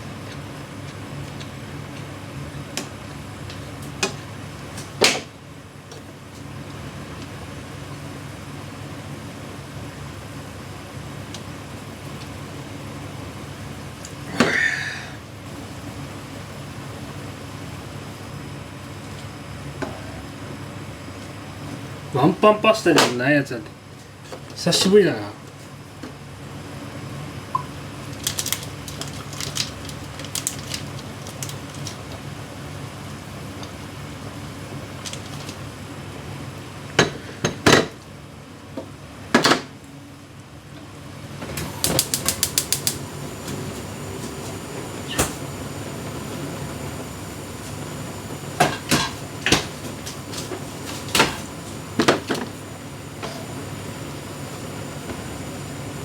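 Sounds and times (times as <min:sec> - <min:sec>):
steady hum: 0:12.0 - 0:22.8, 0:41.7 - 0:56.0.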